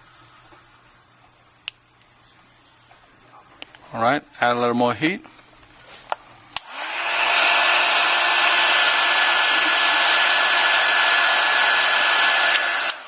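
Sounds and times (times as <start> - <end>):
hot-air blower whining: 6.5 - 13.0.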